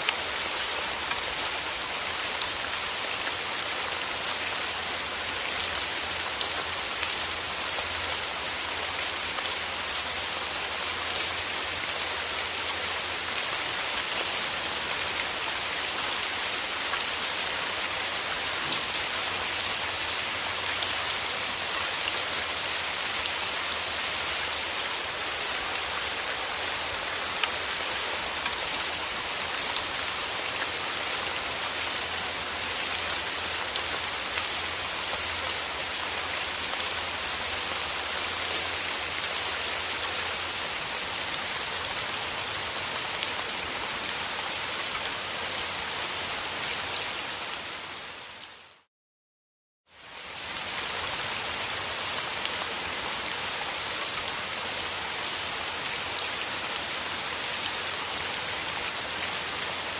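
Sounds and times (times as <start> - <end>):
raindrops ticking on surfaces: 0.0 - 44.0
steady rain falling: 0.0 - 48.9, 49.9 - 59.9.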